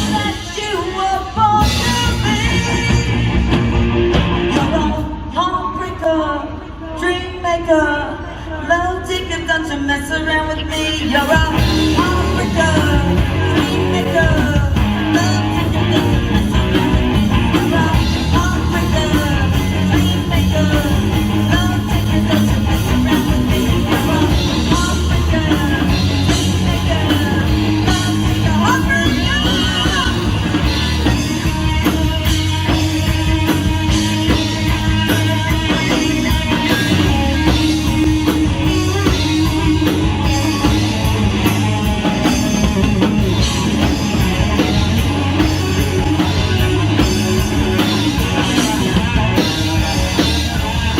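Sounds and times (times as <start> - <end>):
live rock band playing: 0.0 - 5.8, 10.6 - 50.9
lead guitar bending lines: 11.5 - 50.9.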